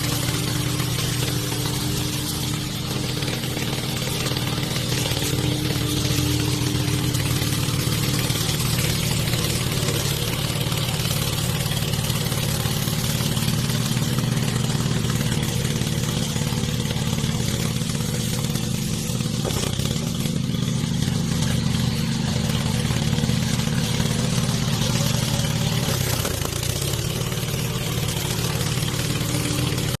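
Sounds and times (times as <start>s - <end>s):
lawn mower engine running: 0.0s - 30.0s.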